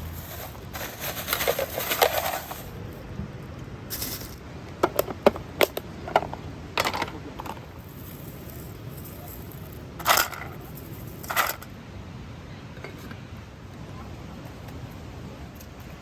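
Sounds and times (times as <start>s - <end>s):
rustling handling noise: 0.0s - 3.1s, 3.9s - 11.7s.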